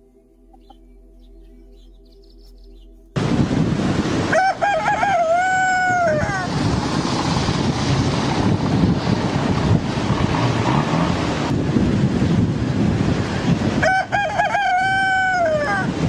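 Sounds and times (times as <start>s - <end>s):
loud steady rushing noise: 3.2s - 16.0s
rooster crowing: 4.3s - 6.5s, 13.8s - 16.0s.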